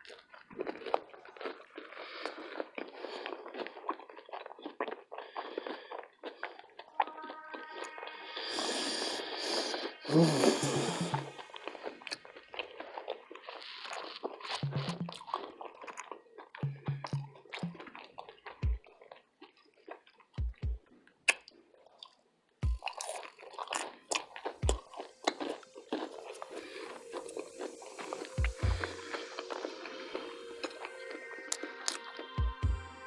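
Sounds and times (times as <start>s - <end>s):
wet crackly chewing: 0.0s - 32.3s
dull low thumps: 14.6s - 15.3s, 16.6s - 17.9s, 18.6s - 18.8s, 20.4s - 20.8s, 22.6s - 22.9s, 24.6s - 24.8s, 28.4s - 29.0s, 32.4s - 33.0s.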